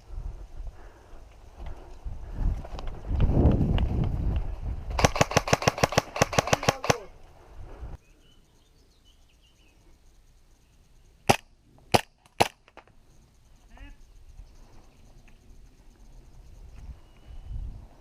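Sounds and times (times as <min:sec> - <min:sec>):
microphone movement rumble: 0:01.6 - 0:05.0
airsoft gun shots: 0:05.0 - 0:07.1, 0:11.3 - 0:12.8.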